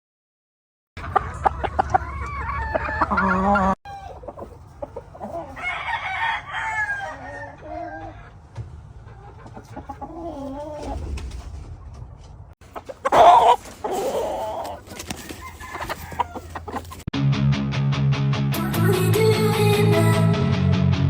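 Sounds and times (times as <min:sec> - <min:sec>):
roosters clucking: 0:01.0 - 0:17.1
rooster crowing: 0:05.2 - 0:08.3, 0:13.1 - 0:16.7
guitar music: 0:17.2 - 0:21.0.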